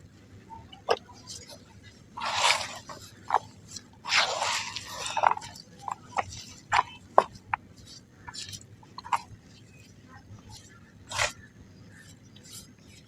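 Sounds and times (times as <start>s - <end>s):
dry mud crumbling: 0.8s - 9.6s.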